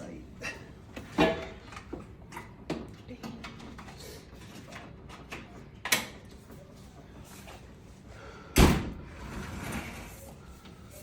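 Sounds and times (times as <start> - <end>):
metal oven parts thudding: 1.2 - 1.6.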